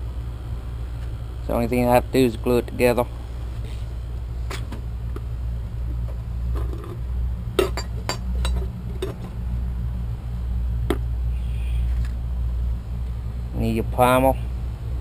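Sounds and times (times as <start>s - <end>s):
steady low hum: 0.0s - 15.0s
plastic pipes and cans clinking: 7.6s - 9.3s.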